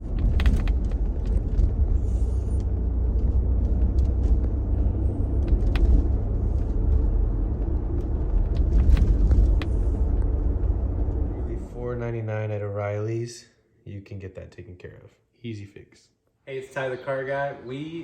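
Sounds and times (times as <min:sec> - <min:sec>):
low road rumble inside car: 0:00.0 - 0:12.2.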